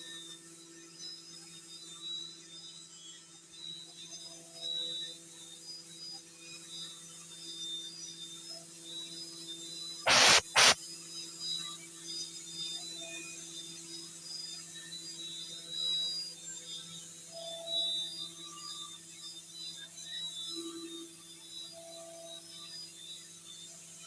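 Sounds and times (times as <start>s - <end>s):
loud hissing blasts: 10.1s - 10.8s
milling machine hum and whine: 10.1s - 10.8s.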